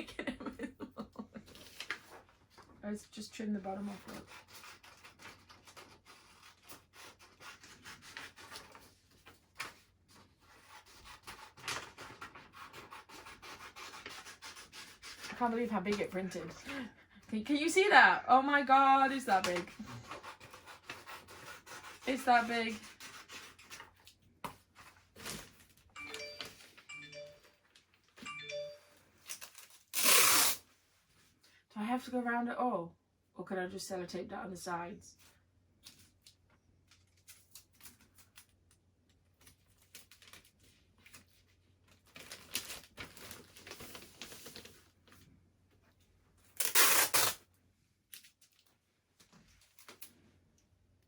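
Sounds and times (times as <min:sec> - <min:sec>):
paper rustling and rubbing: 0:03.8 - 0:16.1, 0:39.4 - 0:45.2
short electronic chime: 0:26.0 - 0:27.5, 0:28.3 - 0:29.0
sharp paper scrapes: 0:29.9 - 0:30.6, 0:46.6 - 0:47.4
tape ripping off roll: 0:29.9 - 0:30.6, 0:46.6 - 0:47.4.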